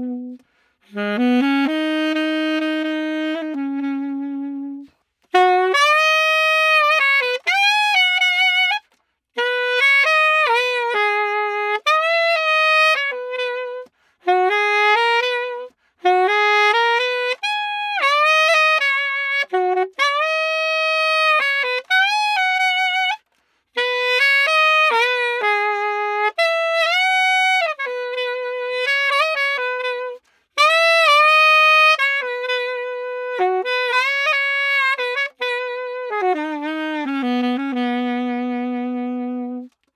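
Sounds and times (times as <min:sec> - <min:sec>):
solo saxophone melody: 0:00.0 - 0:39.9.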